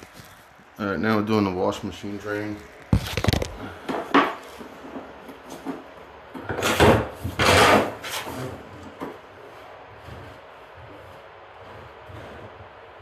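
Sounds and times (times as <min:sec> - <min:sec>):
rasping scrapes: 0:06.6 - 0:13.0.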